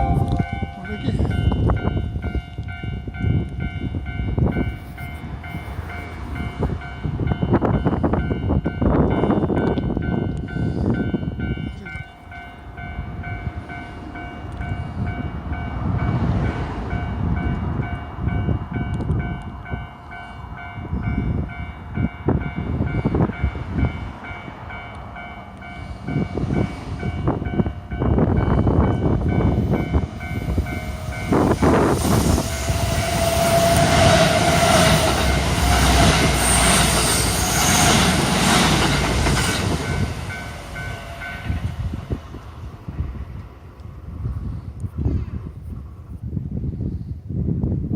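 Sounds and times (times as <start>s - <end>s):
level crossing warning bell: 0.0s - 33.0s
train wheels clacking on rails: 22.4s - 41.8s.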